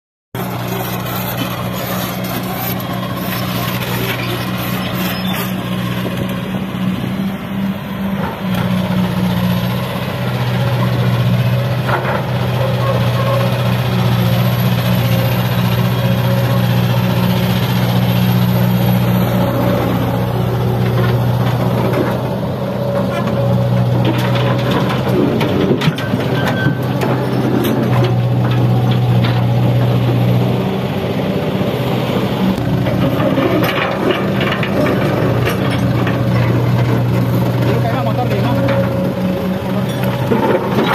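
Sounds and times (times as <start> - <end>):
diesel engines droning: 0.4 - 40.9
knocks and clanks: 23.0 - 30.2, 32.8 - 37.9.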